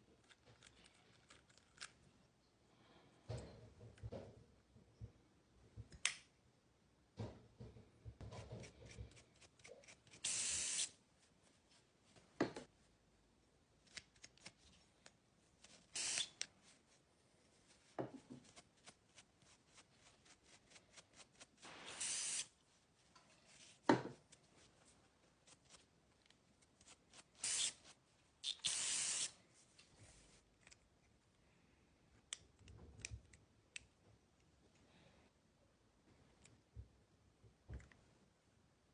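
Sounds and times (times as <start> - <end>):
hissing spray bursts: 10.2 - 10.9, 16.0 - 16.3, 21.6 - 22.5, 27.4 - 27.8, 28.6 - 29.4.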